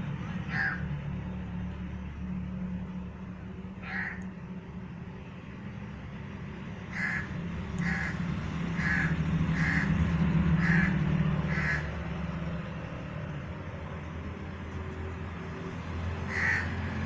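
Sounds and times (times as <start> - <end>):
crow cawing: 0.5 - 0.8, 3.8 - 4.3, 6.9 - 8.2, 8.8 - 10.0, 10.6 - 12.0, 16.3 - 17.0.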